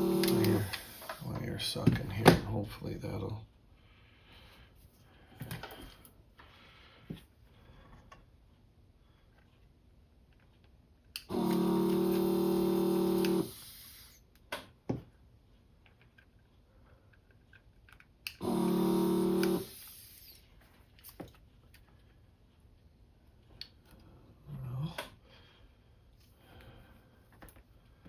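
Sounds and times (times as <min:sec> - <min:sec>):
desoldering vacuum pump buzzing: 0:00.0 - 0:01.2, 0:11.2 - 0:14.2, 0:18.2 - 0:20.4.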